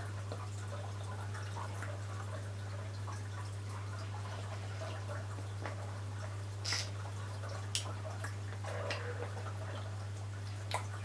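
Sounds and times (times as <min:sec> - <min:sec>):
wet mouth clicks and smacks: 0:06.6 - 0:06.9.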